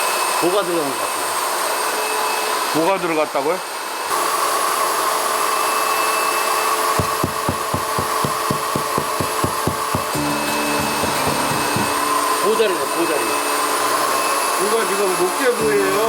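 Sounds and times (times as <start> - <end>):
drill bit grinding wood: 6.4 - 16.0
rapid knocking: 7.0 - 10.2, 10.8 - 12.0.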